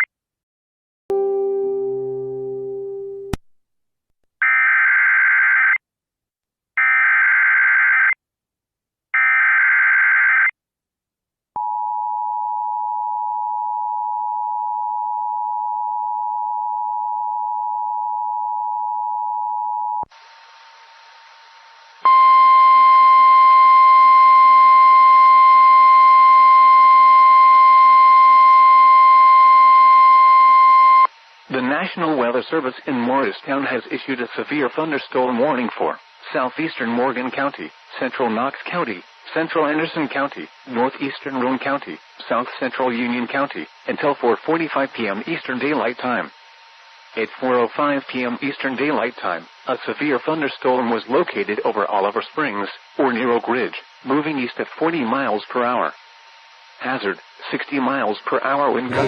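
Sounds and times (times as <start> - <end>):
single-tone warning alarm: 9.2 - 10.5
radio static: 31.5 - 46.3.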